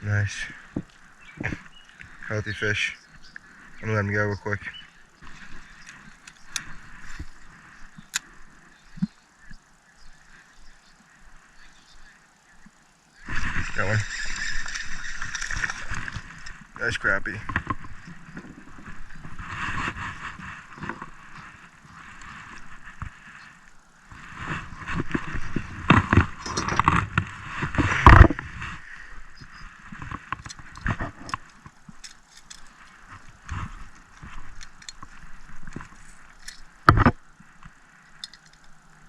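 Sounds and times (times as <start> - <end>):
fishing tackle knocks and scrapes: 24.2 - 28.8, 29.9 - 37.2.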